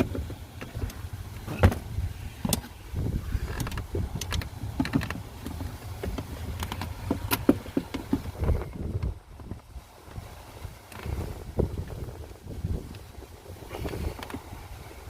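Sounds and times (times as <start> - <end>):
low handling rumble: 0.0 - 15.0
throttle cable clicks and taps: 3.6 - 8.3.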